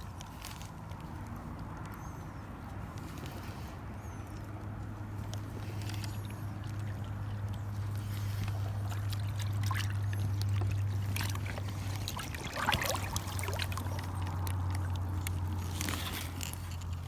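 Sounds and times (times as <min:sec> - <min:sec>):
water trickling and lapping: 0:00.0 - 0:17.0
small clicks and splashes: 0:02.7 - 0:17.0
loud water splash: 0:12.1 - 0:14.0.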